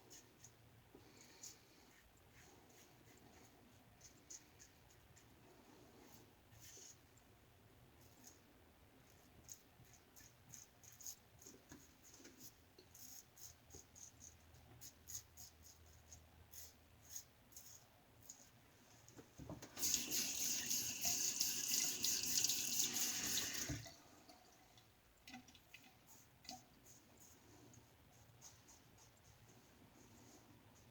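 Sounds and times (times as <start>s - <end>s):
tap running into sink: 19.4s - 23.9s.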